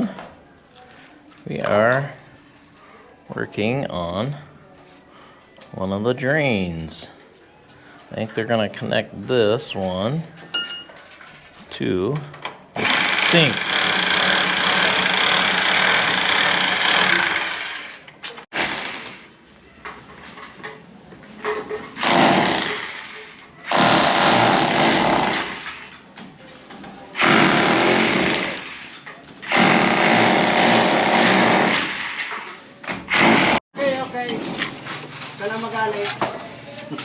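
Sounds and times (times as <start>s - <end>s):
hammer drill running: 12.8s - 18.1s.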